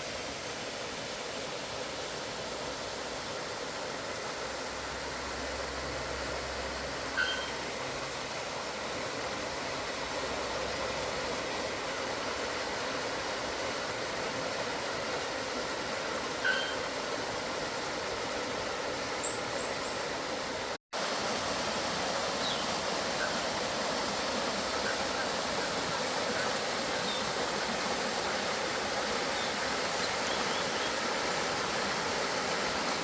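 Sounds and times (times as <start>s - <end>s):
waterfall rushing: 20.2s - 33.0s.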